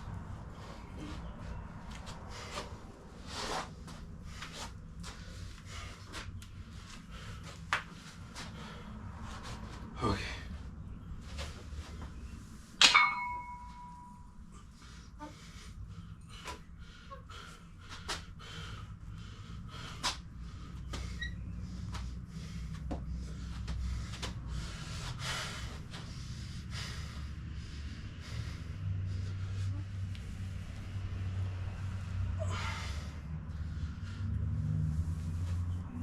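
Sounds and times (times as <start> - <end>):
steady low hum: 0.0 - 36.0
metal weights clanking: 12.8 - 14.2.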